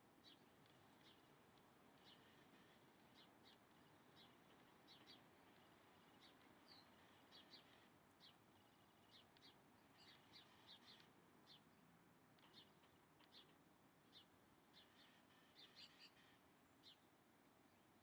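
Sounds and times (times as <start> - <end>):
faint bird chirps: 14.7 - 17.1.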